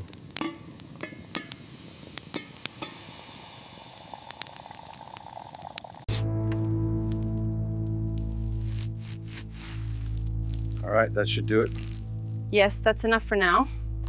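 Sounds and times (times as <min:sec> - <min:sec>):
wood fire crackling and popping: 0:00.0 - 0:12.8
music with sustained tones: 0:06.1 - 0:14.0.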